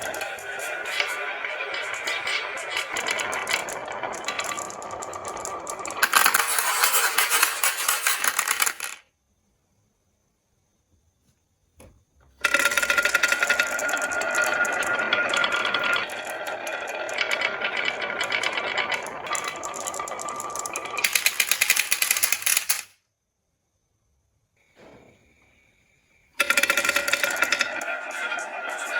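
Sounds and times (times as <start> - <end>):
marbles clattering down a track: 0.0 - 9.0, 12.4 - 22.9, 26.4 - 28.9.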